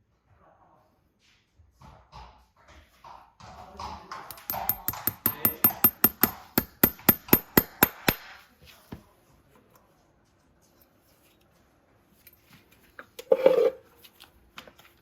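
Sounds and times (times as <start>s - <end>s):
hammer striking metal: 4.3s - 8.4s.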